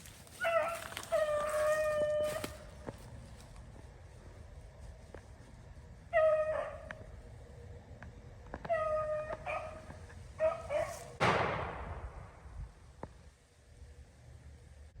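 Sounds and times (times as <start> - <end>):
dogs baying: 0.4 - 2.6, 8.6 - 11.1
shotgun shot with echo: 11.2 - 12.5.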